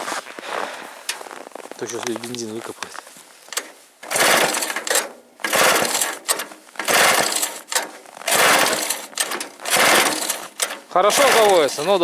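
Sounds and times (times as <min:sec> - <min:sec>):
chainsaw engine cranking: 0:03.5 - 0:12.0
starter cord pulls: 0:03.5 - 0:12.0.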